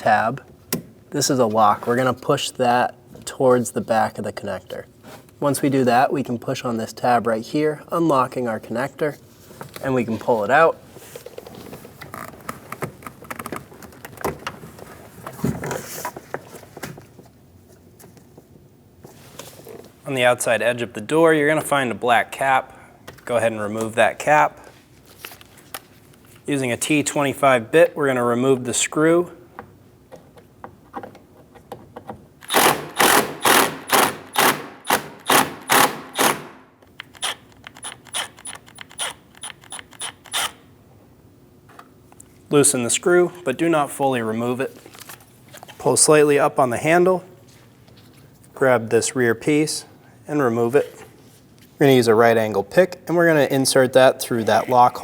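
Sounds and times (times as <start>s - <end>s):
ratchet driver clicking: 32.4s - 40.6s.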